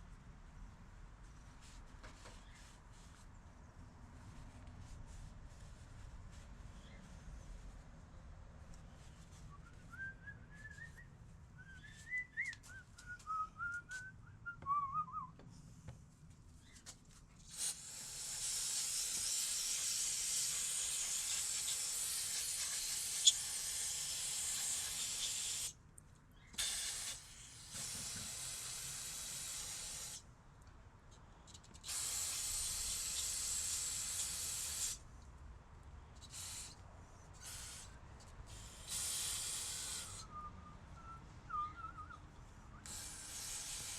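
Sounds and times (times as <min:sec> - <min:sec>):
person whistling: 0:09.6 - 0:15.4, 0:40.2 - 0:42.8
aerosol can spraying: 0:17.5 - 0:25.7, 0:26.6 - 0:30.2, 0:31.8 - 0:35.0, 0:36.2 - 0:36.8, 0:37.4 - 0:40.2, 0:42.9 - 0:43.9.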